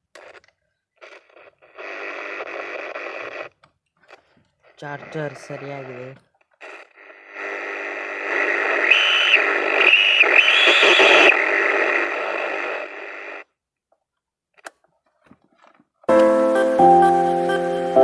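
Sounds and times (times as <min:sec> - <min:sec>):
radio static hissing: 0:01.0 - 0:03.5, 0:04.7 - 0:13.4.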